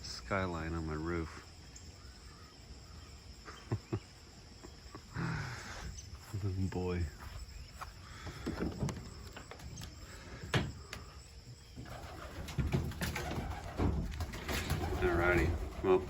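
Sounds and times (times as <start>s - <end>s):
pigeons cooing: 11.8s - 16.0s.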